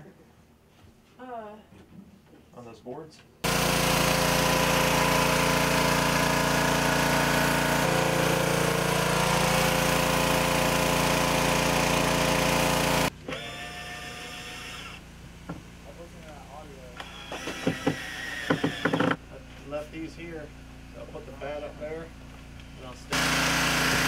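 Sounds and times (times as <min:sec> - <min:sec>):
electric power tool motor: 0:03.4 - 0:15.0, 0:17.0 - 0:19.2, 0:23.1 - 0:24.0.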